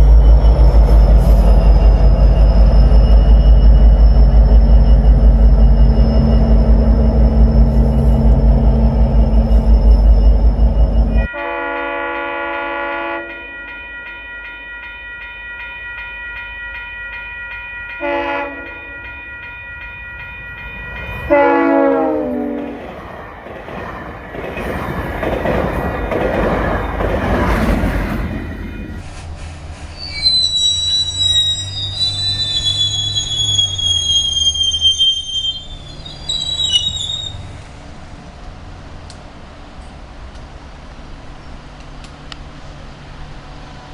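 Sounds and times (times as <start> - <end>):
train wheels squealing on rails: 0.0 - 11.4, 18.0 - 37.8
low train rumble: 0.0 - 43.9
train horn: 11.1 - 14.8, 18.0 - 19.0, 21.3 - 22.8.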